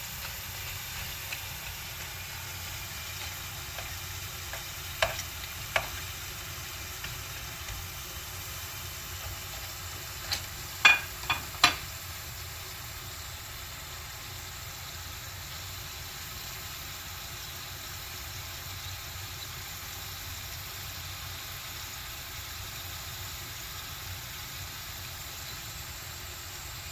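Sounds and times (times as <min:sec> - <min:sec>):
food sizzling in a pan: 0:00.0 - 0:26.9
utensil knocking on pan: 0:03.7 - 0:06.1, 0:10.2 - 0:11.9.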